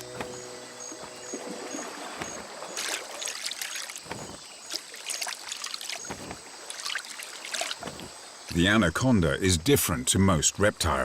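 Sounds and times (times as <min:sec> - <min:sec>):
water sloshing and splashing: 0:00.0 - 0:08.6.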